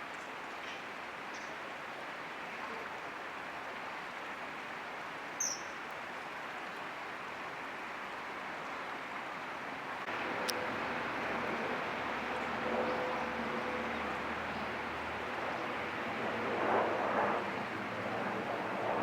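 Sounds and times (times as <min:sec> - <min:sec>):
rushing outdoor background noise: 0:00.0 - 0:19.0
high-pitched bird chirp: 0:05.4 - 0:05.7.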